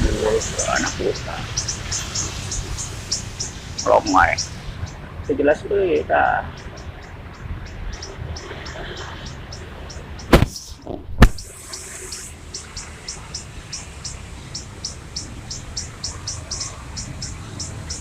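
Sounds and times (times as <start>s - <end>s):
sharp knocks: 10.3s - 10.6s.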